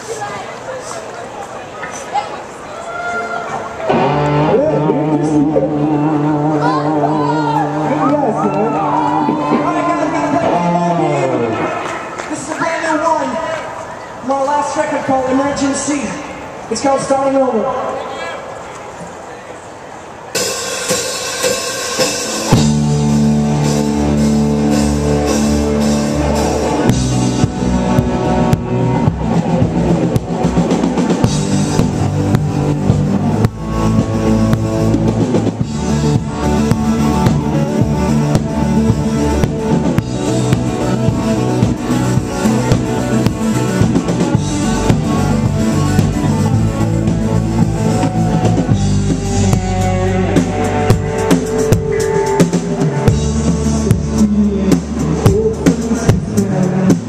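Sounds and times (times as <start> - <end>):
rock song with drums and guitar: 3.9 - 10.8, 20.4 - 57.0.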